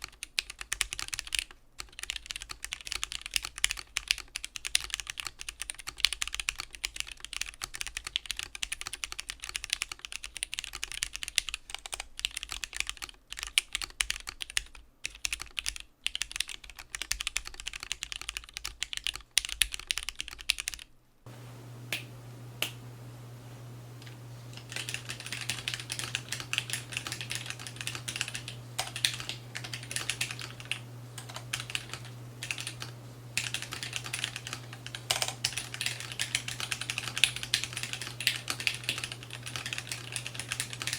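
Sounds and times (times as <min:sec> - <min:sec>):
mechanical keyboard typing: 0:00.0 - 0:20.9, 0:24.0 - 0:40.9
steady low hum: 0:21.3 - 0:40.9.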